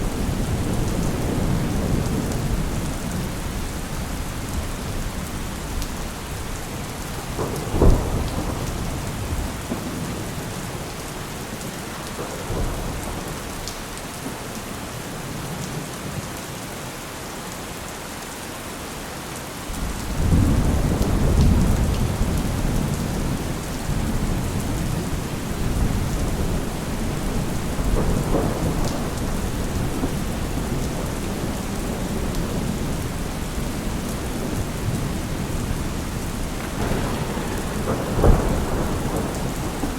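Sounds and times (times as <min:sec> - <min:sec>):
rolling thunder rumble: 0:00.0 - 0:14.4, 0:19.7 - 0:39.9
steady rain: 0:00.0 - 0:39.9
thunderclap: 0:07.1 - 0:10.9, 0:11.6 - 0:13.6, 0:19.8 - 0:39.9.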